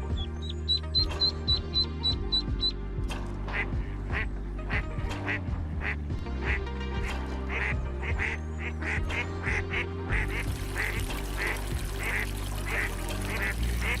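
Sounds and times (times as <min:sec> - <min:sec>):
background music: 0:00.0 - 0:14.0
ducks quacking: 0:03.5 - 0:14.0.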